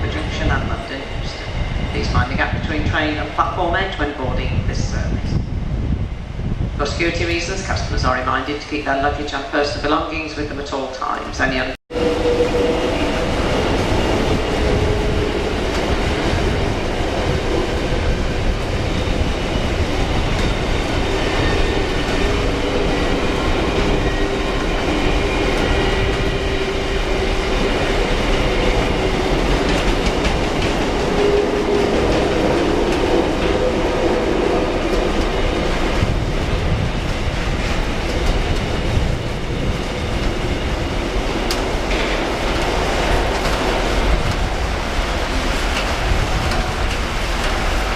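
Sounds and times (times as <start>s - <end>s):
freight train wagons rolling: 11.3s - 47.9s.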